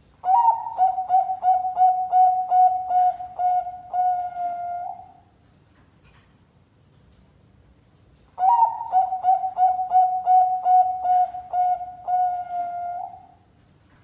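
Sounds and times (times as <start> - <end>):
dove cooing: 0.2 - 5.2, 8.4 - 13.4.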